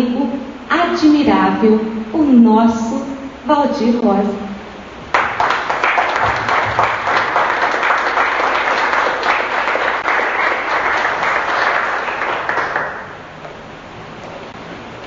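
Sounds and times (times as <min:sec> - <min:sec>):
audience applauding: 0:05.1 - 0:13.3.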